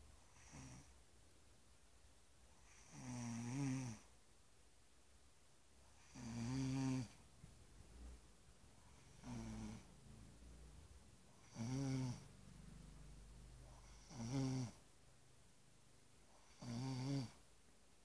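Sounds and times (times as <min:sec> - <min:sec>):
person snoring: 0:06.0 - 0:07.2, 0:08.9 - 0:09.9, 0:11.3 - 0:12.3, 0:13.6 - 0:14.8, 0:16.4 - 0:17.4.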